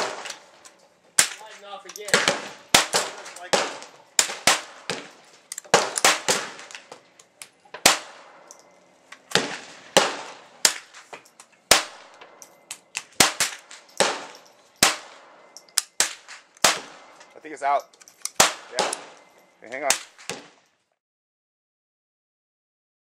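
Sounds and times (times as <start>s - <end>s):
gunshots: 0.0s - 0.6s, 1.2s - 6.9s, 7.8s - 8.5s, 9.3s - 11.1s, 11.7s - 12.2s, 13.0s - 17.6s, 18.3s - 20.6s.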